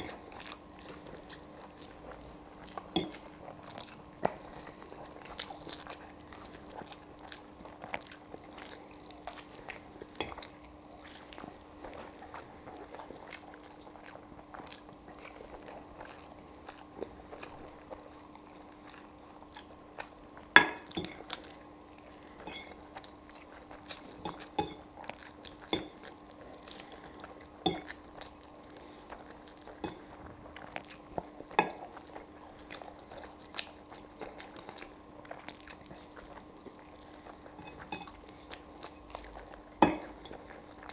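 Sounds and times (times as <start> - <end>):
close chewing of pasta: 0.0 - 40.9
fork clinking on a plate: 20.6 - 21.2, 27.7 - 27.9.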